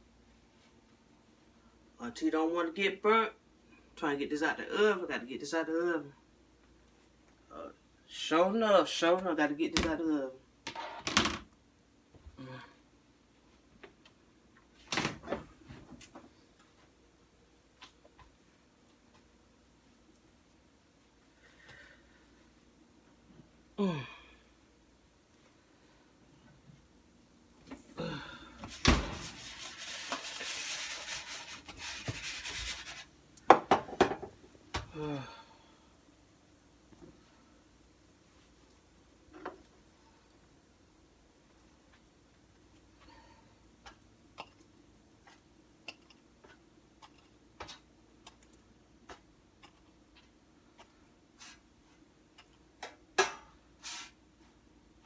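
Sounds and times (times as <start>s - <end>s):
steady scraping: 28.7s - 33.2s.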